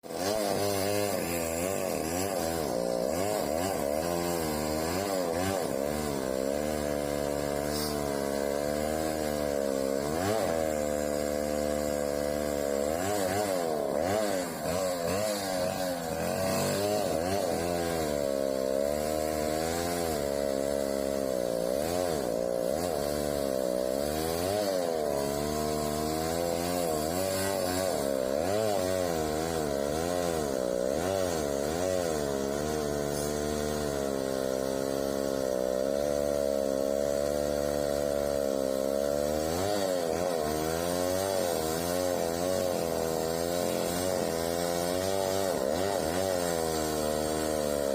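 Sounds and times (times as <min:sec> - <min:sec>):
chainsaw engine running: 0:00.0 - 0:47.9.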